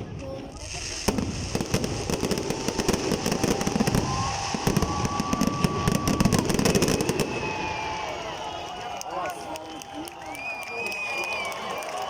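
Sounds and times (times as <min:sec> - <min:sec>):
fireworks crackling and booming: 0:00.0 - 0:08.6
firework whistle: 0:02.1 - 0:08.8.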